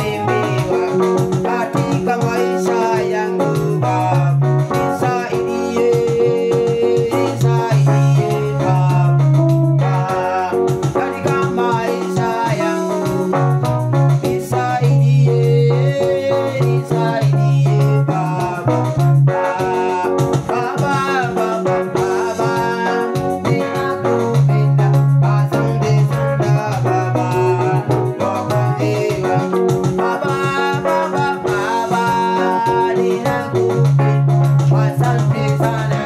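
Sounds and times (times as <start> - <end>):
upbeat gospel keyboard music: 0.0 - 36.0.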